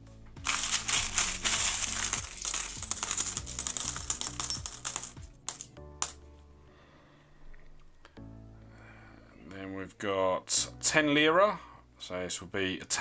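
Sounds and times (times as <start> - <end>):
soft background music: 0.0 - 13.0
coins clattering and jingling: 0.4 - 6.2.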